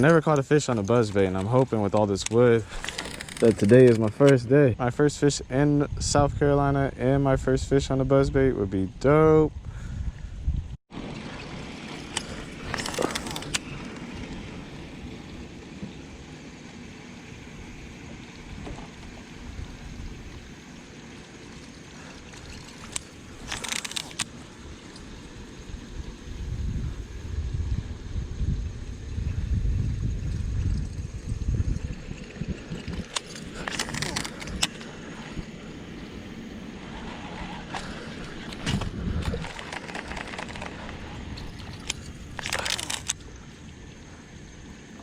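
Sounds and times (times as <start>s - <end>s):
moving air and river water: 0.0s - 45.0s
crackling hiss: 11.1s - 45.0s
sharp clicks: 12.1s - 14.0s, 22.3s - 25.1s, 32.8s - 35.0s, 37.7s - 43.3s
light clicks: 37.7s - 43.4s.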